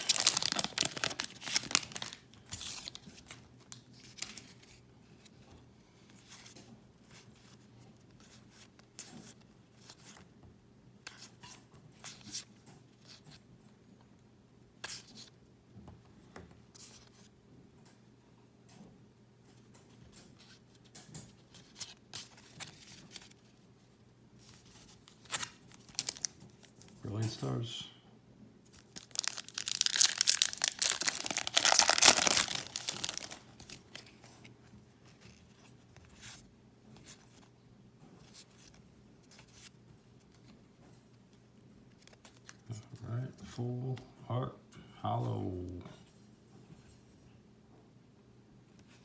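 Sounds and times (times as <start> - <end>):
cards and wrappers rustling: 0.0 - 4.8, 24.4 - 27.0, 28.7 - 34.5.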